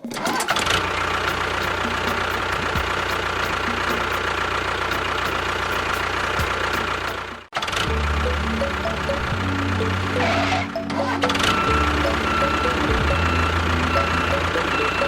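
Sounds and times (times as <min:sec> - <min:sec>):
engine idling: 0:00.2 - 0:15.0.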